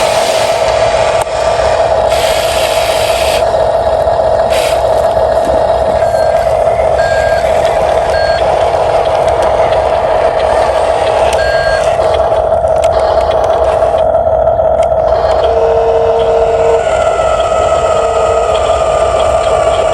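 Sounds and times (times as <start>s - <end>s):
loud hiss: 0.0s - 3.5s, 4.4s - 5.0s
short electronic beeps: 6.0s - 8.6s, 11.3s - 13.6s
toy vehicle motor whine: 9.4s - 14.2s, 14.8s - 19.9s.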